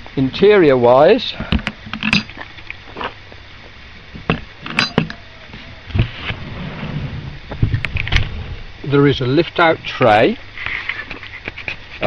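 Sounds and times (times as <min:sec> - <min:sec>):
metal clasps clinking: 0:04.6 - 0:05.2.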